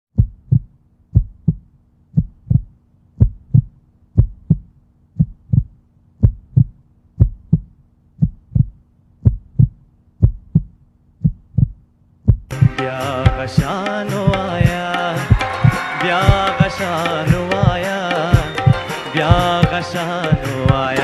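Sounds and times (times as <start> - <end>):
heartbeat thumps: 0.1 - 21.0.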